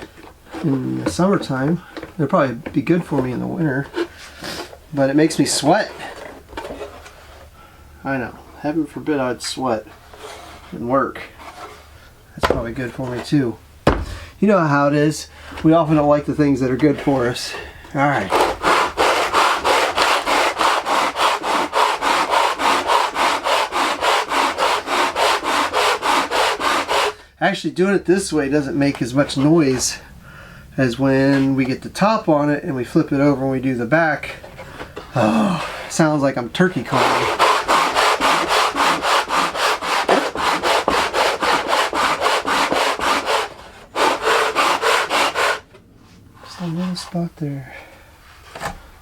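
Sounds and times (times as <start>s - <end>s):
wood scrubbed on sandpaper: 18.1s - 27.2s, 36.7s - 45.7s.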